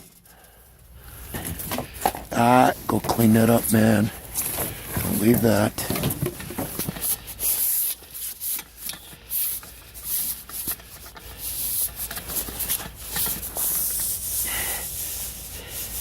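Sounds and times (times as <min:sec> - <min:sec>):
rubbing and rustling: 0:01.2 - 0:16.0
steady high hiss: 0:11.5 - 0:16.0.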